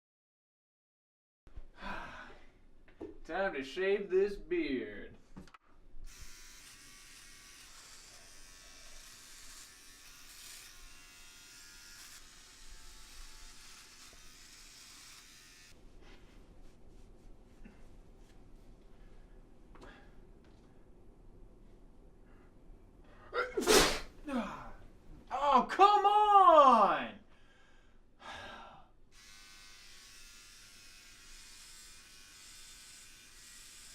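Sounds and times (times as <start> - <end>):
electric shaver buzzing: 6.1 - 15.8, 29.2 - 33.9.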